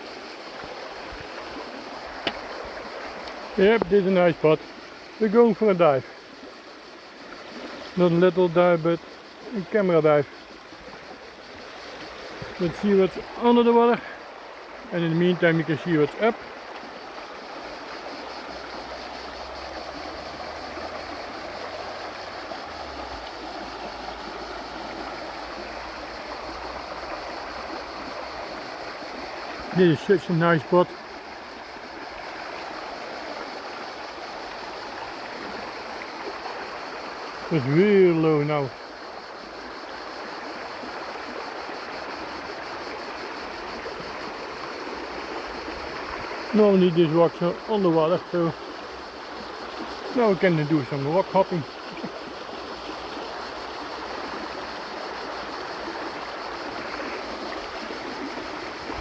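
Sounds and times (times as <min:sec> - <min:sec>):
river water rushing: 0:00.0 - 0:59.0
river rushing over rocks: 0:09.9 - 0:37.4.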